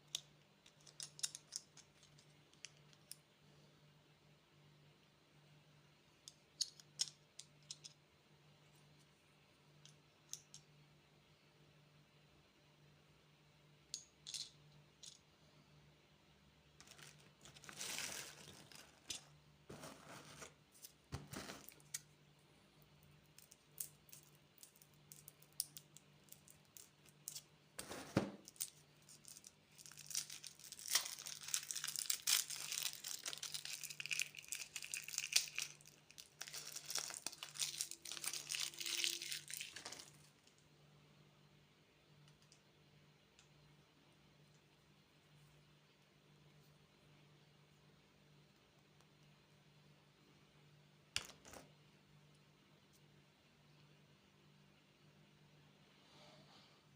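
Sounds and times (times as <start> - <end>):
candy wrappers crinkling: 16.8 - 19.3, 28.5 - 40.4.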